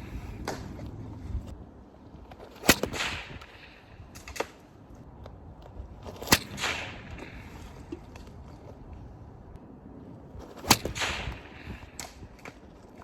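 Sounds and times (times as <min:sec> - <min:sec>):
sling cracking like a whip: 0:06.2 - 0:07.4.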